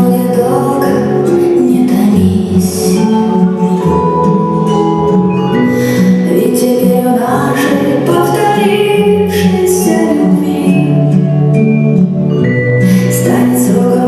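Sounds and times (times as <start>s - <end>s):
music with held notes and melody: 0.0s - 14.0s.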